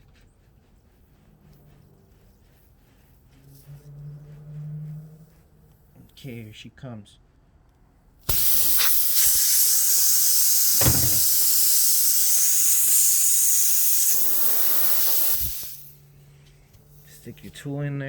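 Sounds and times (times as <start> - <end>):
air hissing from tire: 8.3 - 16.2
brief knock: 10.8 - 11.4.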